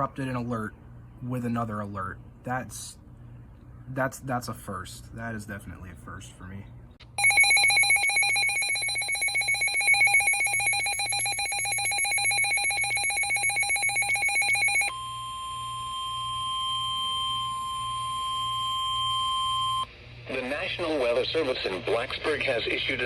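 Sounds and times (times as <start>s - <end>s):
steady warning alarm tone: 7.1s - 19.9s
trilling electronic alert tone: 7.2s - 19.9s.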